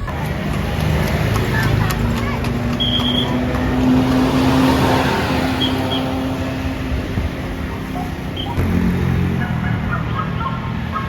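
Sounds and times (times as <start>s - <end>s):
vehicle engine passing: 0.0s - 11.0s.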